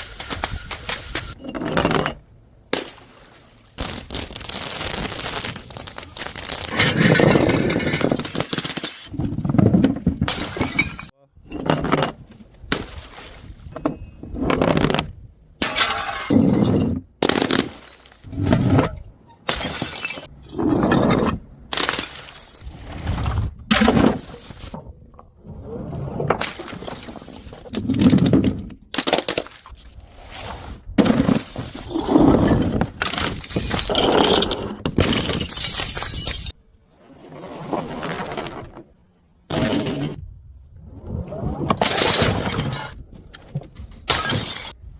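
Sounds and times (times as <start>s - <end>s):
objects breaking: 0.1s - 13.2s, 13.9s - 24.8s, 26.3s - 29.8s, 31.0s - 36.6s, 41.7s - 44.8s
glass smashing: 10.3s - 11.1s, 15.6s - 18.3s, 19.4s - 20.3s, 21.7s - 22.6s, 35.0s - 36.6s, 44.1s - 44.8s.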